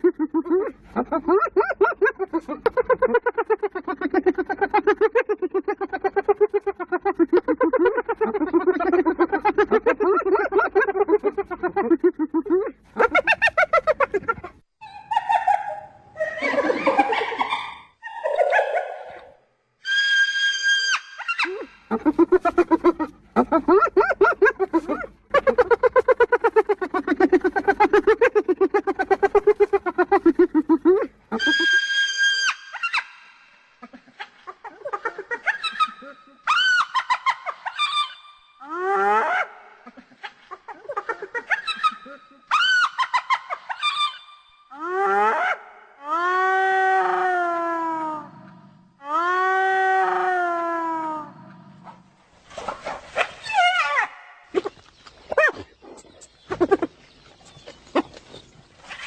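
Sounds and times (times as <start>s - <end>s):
hyenas giggling calls: 0.0s - 19.4s, 21.3s - 32.0s, 33.8s - 47.7s, 51.0s - 58.6s
hyenas chattering: 0.6s - 14.6s, 21.3s - 32.0s
long high-pitched hyena call: 19.8s - 22.6s, 31.3s - 33.2s
hyena whooping: 19.8s - 33.0s.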